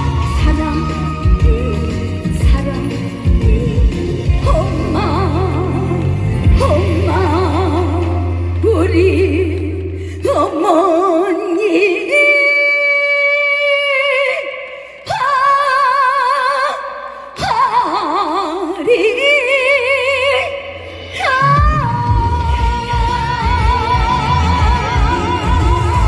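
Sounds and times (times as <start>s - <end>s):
backing music: 0.0s - 10.0s, 19.8s - 26.0s
woman singing with vibrato: 0.0s - 26.0s.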